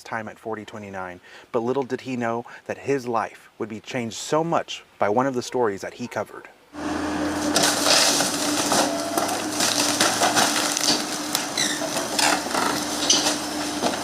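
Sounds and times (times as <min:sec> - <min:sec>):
demolition machinery engine hum: 0:06.8 - 0:14.0
splintering wood crunching: 0:06.8 - 0:14.0.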